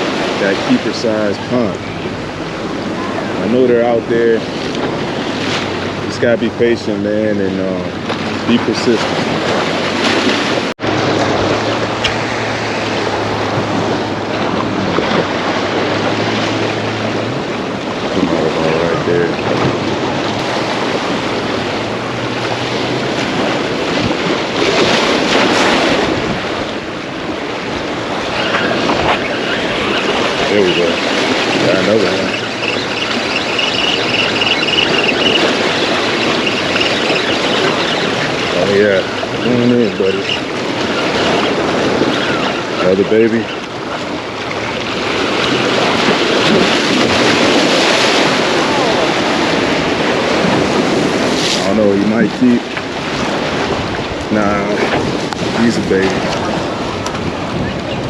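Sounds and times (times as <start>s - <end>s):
waves washing: 0.0s - 58.0s
wind on microphone: 0.0s - 58.0s.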